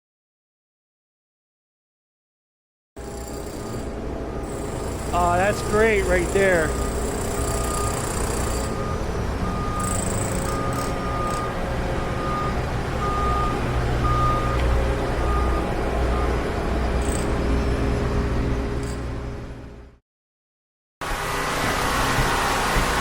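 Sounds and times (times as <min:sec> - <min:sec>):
diesel engine running: 0:03.0 - 0:20.0, 0:21.0 - 0:23.0
backup alarm beeping: 0:04.3 - 0:16.4.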